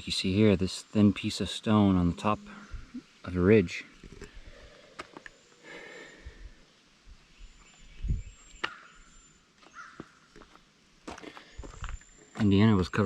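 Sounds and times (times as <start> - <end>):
quiet woodland ambience: 0.0 - 13.0
low thumps: 1.7 - 3.3
high thin bird calls: 7.2 - 10.5.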